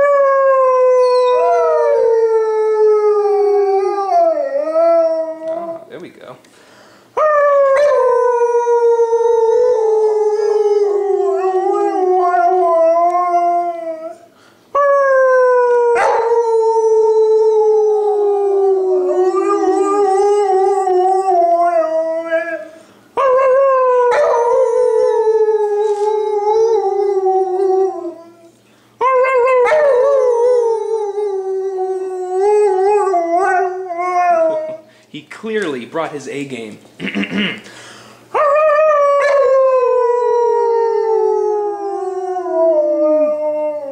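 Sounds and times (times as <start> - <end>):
dog howling: 0.0 - 5.9, 7.2 - 34.8, 38.4 - 43.9.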